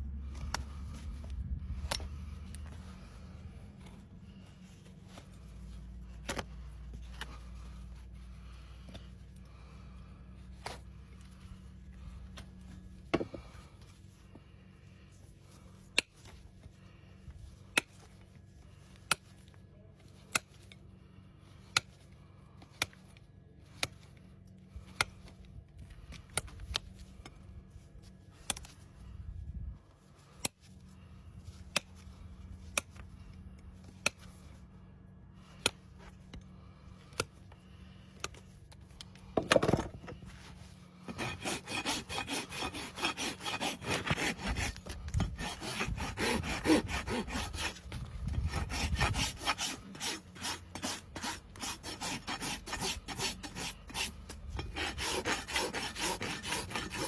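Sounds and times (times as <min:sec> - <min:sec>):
rasp filing hoof: 0:39.4 - 0:57.0.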